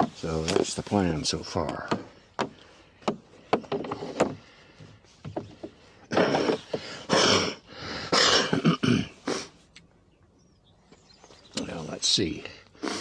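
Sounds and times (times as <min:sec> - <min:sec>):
rough scraping rustles: 0:00.0 - 0:01.7, 0:03.7 - 0:07.4.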